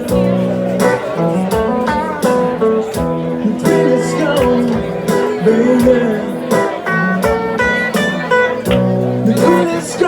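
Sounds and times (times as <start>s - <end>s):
acoustic guitar strumming: 0.0s - 10.0s
person singing: 2.5s - 7.4s, 9.2s - 10.0s.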